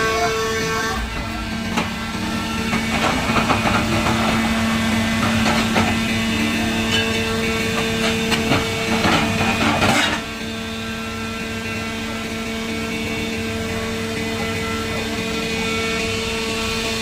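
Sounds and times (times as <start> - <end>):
hydraulic power unit humming: 0.0 - 17.0
metal clanks and knocks: 5.2 - 6.2, 6.8 - 10.3.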